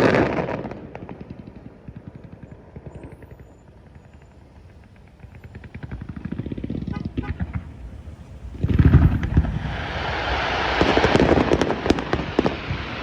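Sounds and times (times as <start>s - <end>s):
distant pops: 0.0s - 13.0s
fireworks boom: 0.0s - 13.0s
fireworks crackling: 0.0s - 13.0s
low rumble: 4.2s - 12.1s.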